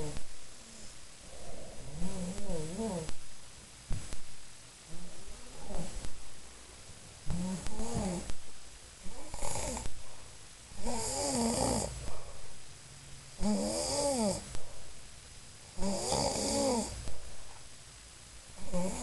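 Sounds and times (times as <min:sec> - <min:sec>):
person snoring: 0:00.0 - 0:00.2, 0:01.2 - 0:03.2, 0:04.9 - 0:06.1, 0:07.3 - 0:08.4, 0:09.0 - 0:10.0, 0:10.8 - 0:12.4, 0:13.4 - 0:14.6, 0:15.8 - 0:17.0, 0:18.6 - 0:19.0.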